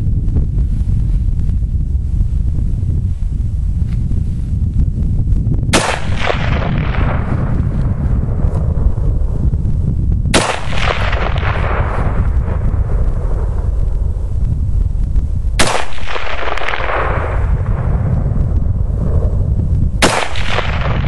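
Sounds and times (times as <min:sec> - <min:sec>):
wind rumble on microphone: 0:00.0 - 0:21.0
rifle shots with echo: 0:05.7 - 0:07.8, 0:10.3 - 0:13.7, 0:15.6 - 0:18.0, 0:20.0 - 0:21.0.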